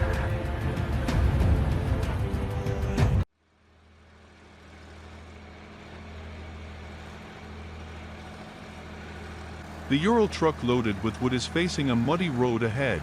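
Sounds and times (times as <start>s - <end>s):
loud background music: 0.0s - 3.2s
truck engine running: 0.0s - 13.0s.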